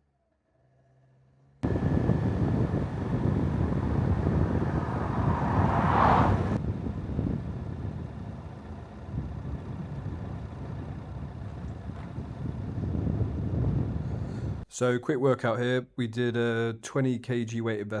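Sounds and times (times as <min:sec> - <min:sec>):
car engine and road noise: 0:01.0 - 0:14.7
rushing swell: 0:01.6 - 0:06.6.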